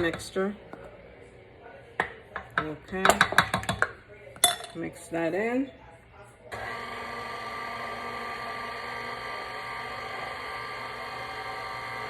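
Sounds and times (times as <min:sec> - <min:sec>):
electric mixer running: 0:06.5 - 0:12.0.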